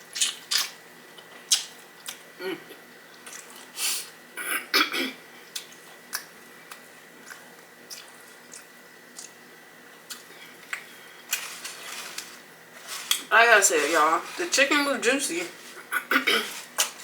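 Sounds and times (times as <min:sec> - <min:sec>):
chewing crispy food: 0:00.0 - 0:03.8, 0:05.4 - 0:13.3.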